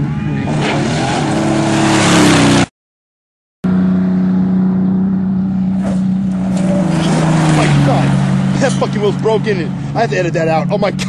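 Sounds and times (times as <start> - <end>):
vehicle engine running: 3.6 - 11.0.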